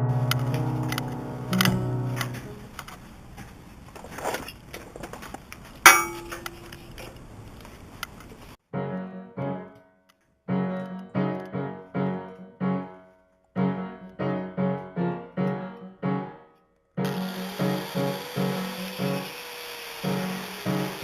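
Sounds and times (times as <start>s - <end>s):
piano chords: 0.0s - 2.8s, 8.6s - 21.0s
steady hiss: 17.1s - 21.0s.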